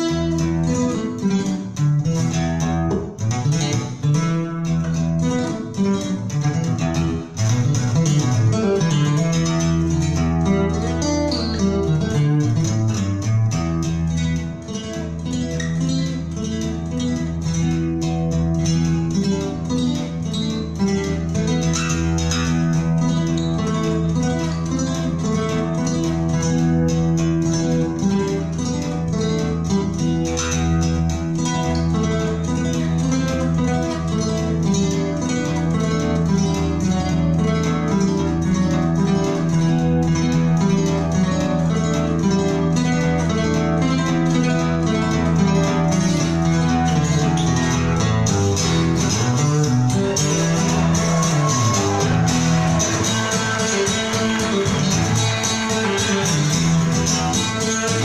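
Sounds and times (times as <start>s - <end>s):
plucked guitar music: 0.0s - 58.0s
sustained bass: 38.6s - 58.0s.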